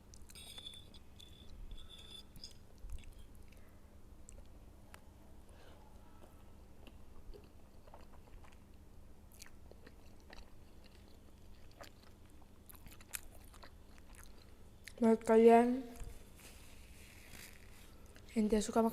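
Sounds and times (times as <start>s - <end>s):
person chewing food: 2.7s - 5.1s, 6.0s - 15.0s, 16.2s - 18.3s.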